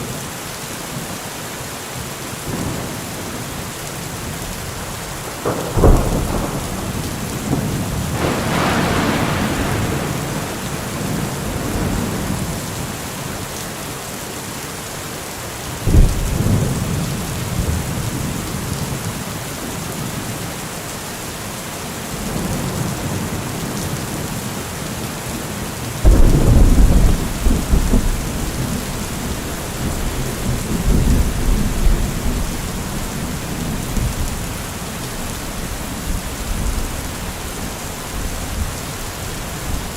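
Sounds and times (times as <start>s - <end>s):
steady rain falling: 0.0s - 39.9s
thunder cracking and rumbling: 4.2s - 13.3s, 15.8s - 19.0s, 26.0s - 37.4s.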